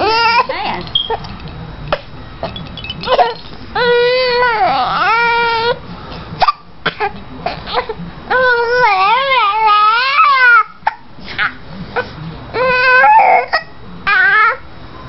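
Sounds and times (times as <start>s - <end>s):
baby crying: 3.2s - 5.8s, 12.6s - 14.6s.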